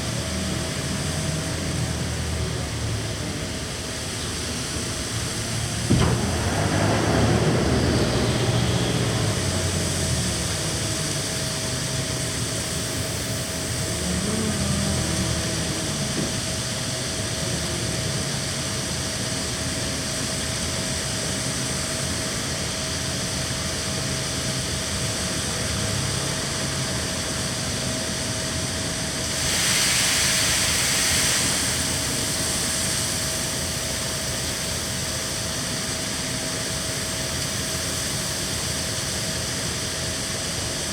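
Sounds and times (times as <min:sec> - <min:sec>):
harvest machinery engine drone: 0:00.0 - 0:29.4
steady machine whine: 0:00.0 - 0:40.9
hissing rush: 0:05.7 - 0:10.8, 0:29.3 - 0:35.3.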